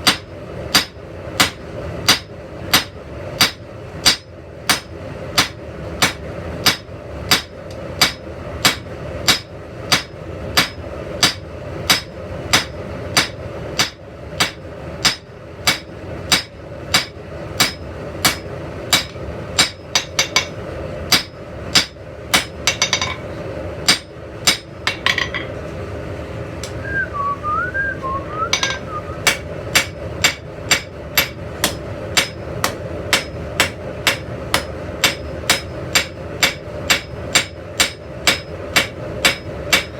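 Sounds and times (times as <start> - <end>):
hammer striking iron on anvil: 0.0 - 25.6, 28.5 - 39.9
person whistling: 26.8 - 29.2.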